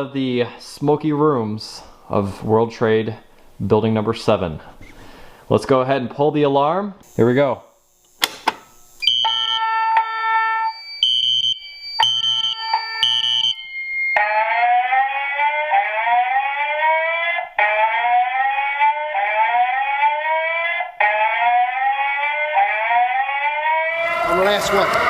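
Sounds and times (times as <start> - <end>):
fire alarm multi-note tones: 8.9 - 25.0
fire alarm rising whoop tone: 9.0 - 25.0.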